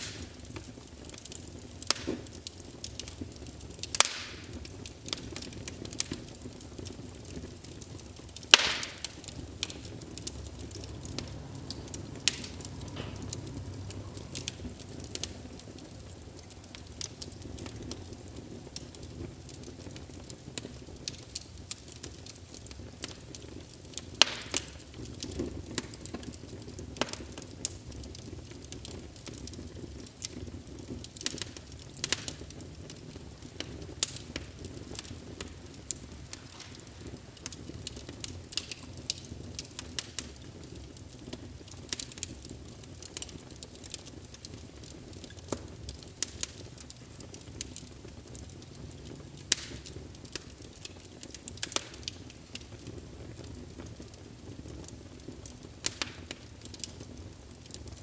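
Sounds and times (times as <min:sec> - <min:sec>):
burning logs crackling and popping: 0:00.0 - 0:58.0
low rumble of flames: 0:00.0 - 0:58.0.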